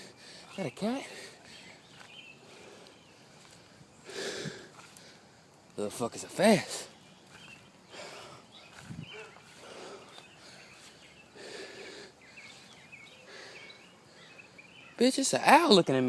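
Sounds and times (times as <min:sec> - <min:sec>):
quick bird chirps: 0:06.5 - 0:15.0
soft rustling: 0:08.5 - 0:11.2.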